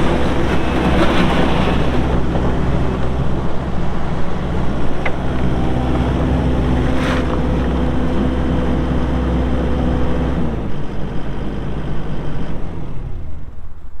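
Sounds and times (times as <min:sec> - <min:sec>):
rough rushing noise: 0:00.0 - 0:10.1
diesel engine running: 0:00.0 - 0:13.9.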